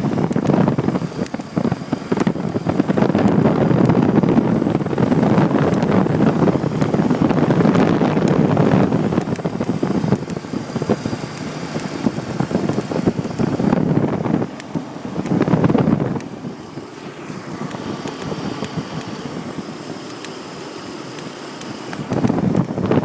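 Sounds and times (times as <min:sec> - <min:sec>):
car engine running roughly: 0:00.0 - 0:23.0.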